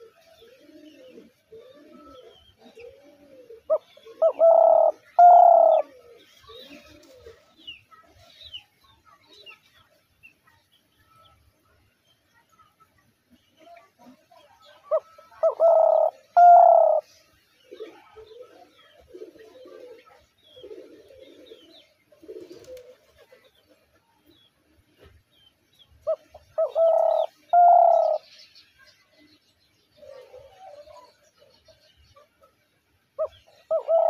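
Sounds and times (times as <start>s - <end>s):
dove cooing: 0.0s - 7.6s, 14.7s - 23.7s, 26.0s - 28.2s, 30.0s - 31.5s, 33.2s - 34.0s.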